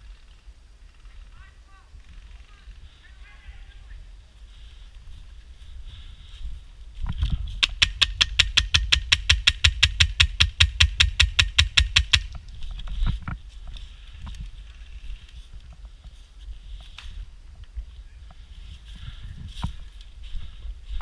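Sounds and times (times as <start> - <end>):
airsoft gun rapid fire: 7.6 - 12.3
sharp knock: 7.6 - 12.3.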